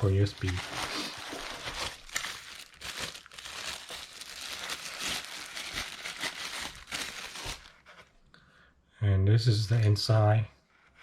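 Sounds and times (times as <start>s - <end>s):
packaging crinkling: 0.0s - 7.9s.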